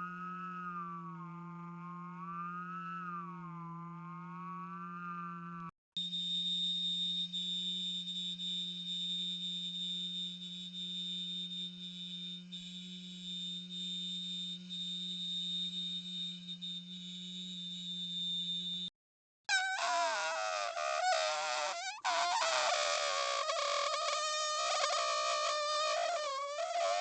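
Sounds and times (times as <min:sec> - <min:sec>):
man humming low note: 0:00.0 - 0:05.7
high steady whistle: 0:06.0 - 0:18.9, 0:19.5 - 0:27.0.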